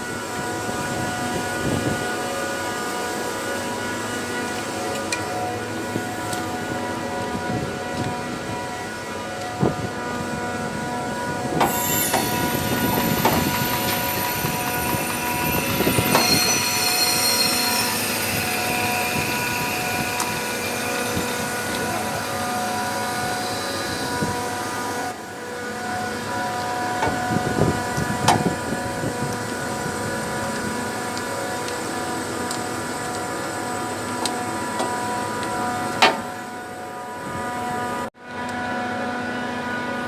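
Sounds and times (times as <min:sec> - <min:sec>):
chiller machine drone with whine: 0:00.0 - 0:40.0
high-pitched squealing whistles: 0:11.7 - 0:22.4.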